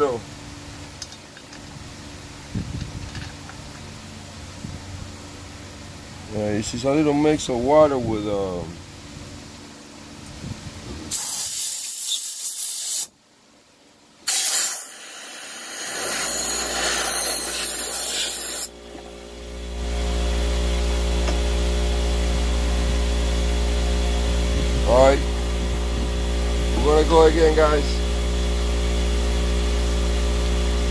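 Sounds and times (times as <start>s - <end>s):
steady low hum: 0.0s - 11.4s, 13.2s - 30.9s
loud hissing spray: 11.0s - 13.1s, 14.2s - 18.7s.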